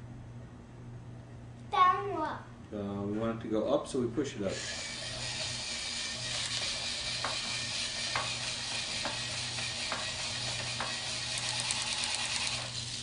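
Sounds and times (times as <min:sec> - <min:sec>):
battery drill running: 0:04.5 - 0:13.0.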